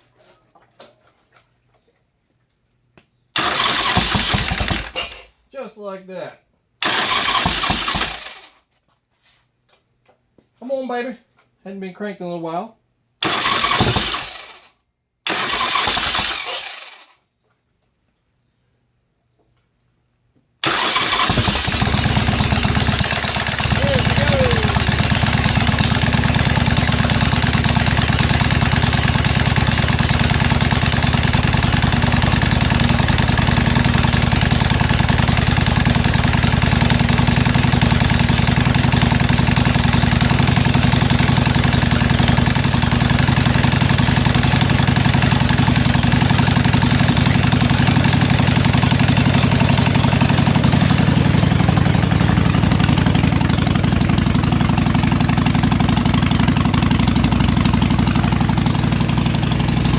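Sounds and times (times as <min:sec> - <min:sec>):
motorcycle engine idling: 0:21.6 - 0:59.9.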